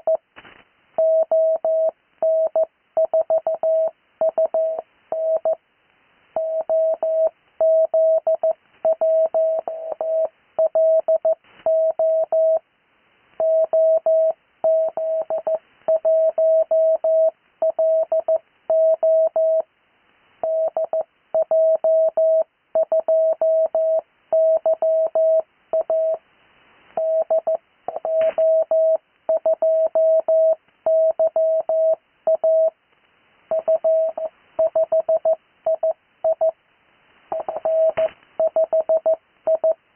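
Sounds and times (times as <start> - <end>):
morse code tone: 27.0 - 32.7, 37.3 - 39.8.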